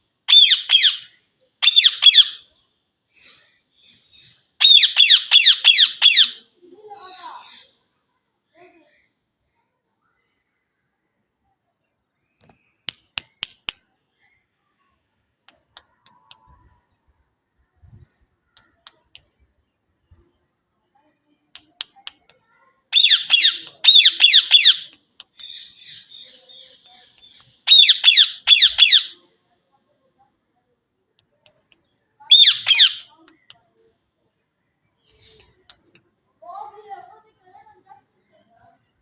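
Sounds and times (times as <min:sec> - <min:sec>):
parrot chattering: 0:00.3 - 0:02.4, 0:04.6 - 0:06.4, 0:23.0 - 0:25.6, 0:26.9 - 0:29.2, 0:32.3 - 0:33.5
parrot chirping: 0:00.3 - 0:02.4, 0:04.6 - 0:06.4, 0:22.9 - 0:29.2, 0:32.3 - 0:33.4
parrot squawking: 0:00.3 - 0:02.4, 0:04.6 - 0:06.4, 0:23.0 - 0:26.1, 0:27.7 - 0:29.2, 0:32.3 - 0:33.1.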